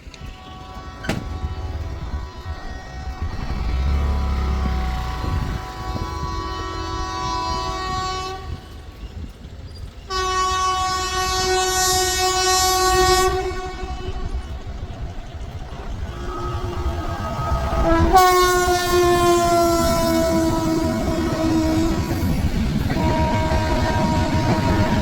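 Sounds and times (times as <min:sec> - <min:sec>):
low rumble of train: 0:00.0 - 0:25.0
train horn blasts: 0:00.1 - 0:09.2, 0:10.0 - 0:25.0.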